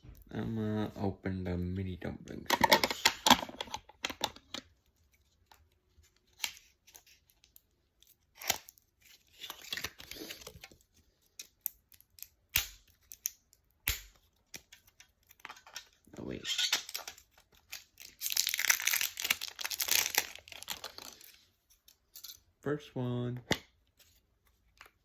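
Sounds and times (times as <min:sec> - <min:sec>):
packaging tearing and rustling: 0:06.2 - 0:13.3, 0:14.2 - 0:22.0
packaging clicks and snips: 0:11.4 - 0:15.6.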